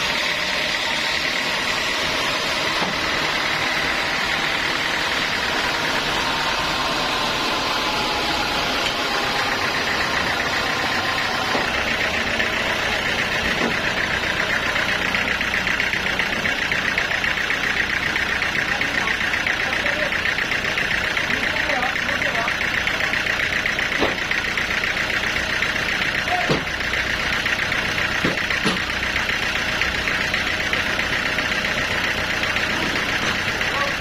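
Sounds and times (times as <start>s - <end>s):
fast pulsing whine: 0.0s - 23.8s
sawmill saw running: 0.0s - 34.0s.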